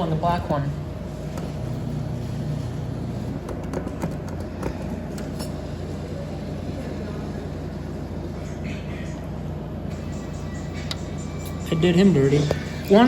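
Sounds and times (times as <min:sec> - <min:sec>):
claw machine humming: 0:00.0 - 0:13.0.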